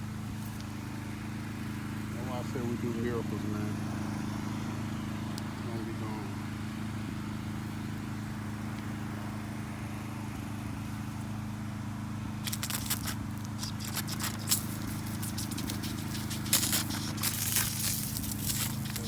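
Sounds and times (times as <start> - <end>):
pressure washer engine humming: 0.0 - 19.0
dense crackling: 12.4 - 19.0.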